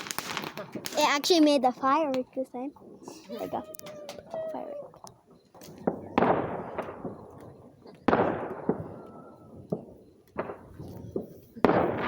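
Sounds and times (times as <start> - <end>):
fireworks bangs and cracks: 0.0 - 2.3, 5.6 - 12.0.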